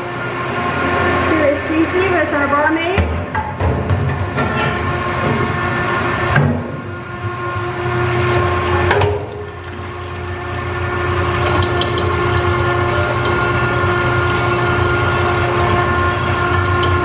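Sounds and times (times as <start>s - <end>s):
motorized brush washer humming: 3.9s - 17.0s.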